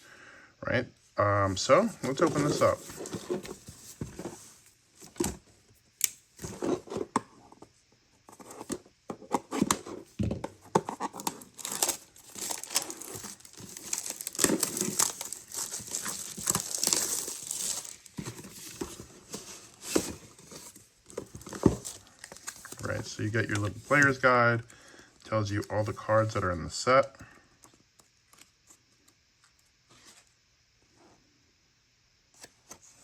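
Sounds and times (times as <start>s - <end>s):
cardboard box handled: 10.7s - 22.8s
plastic wrapping tearing and crumpling: 11.0s - 18.7s.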